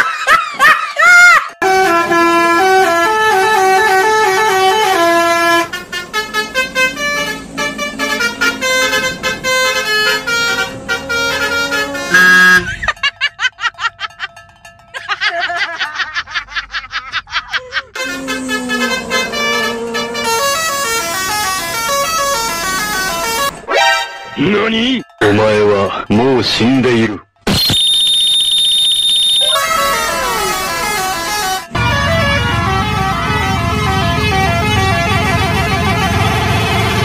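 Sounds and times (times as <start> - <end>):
musical horn playing a tune: 1.6 - 12.9, 18.0 - 24.6, 29.4 - 37.0
fast pulsing beeps: 27.5 - 29.6.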